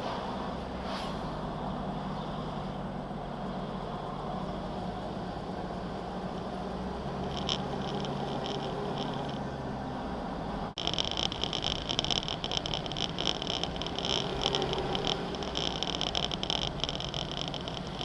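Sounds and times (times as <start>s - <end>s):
vehicle engine humming: 0.0s - 18.0s
high fast-pulsing chirring: 10.8s - 18.0s.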